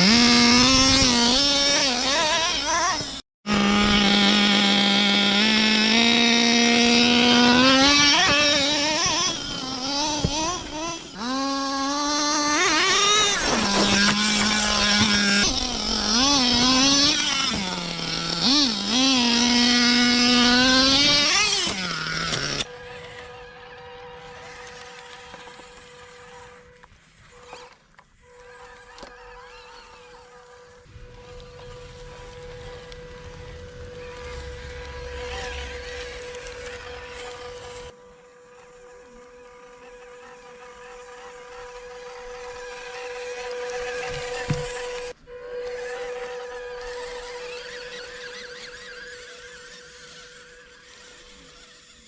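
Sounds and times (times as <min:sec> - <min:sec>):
model car engine revving: 0:00.0 - 0:52.0
steady hum: 0:29.6 - 0:52.0.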